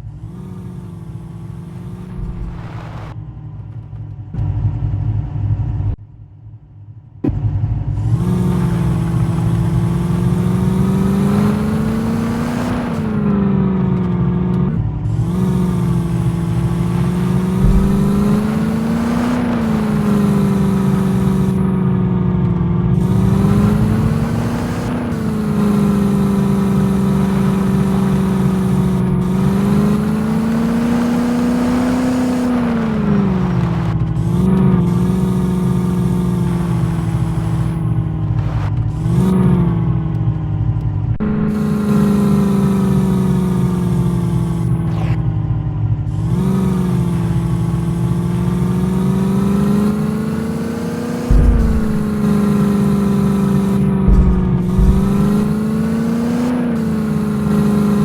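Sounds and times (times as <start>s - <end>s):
engine revving under load: 0.0s - 3.2s, 7.2s - 40.4s, 41.0s - 58.0s.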